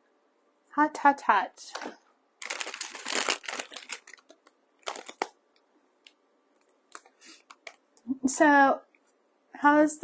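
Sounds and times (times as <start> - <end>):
dry craft materials crinkling: 2.4 - 5.4.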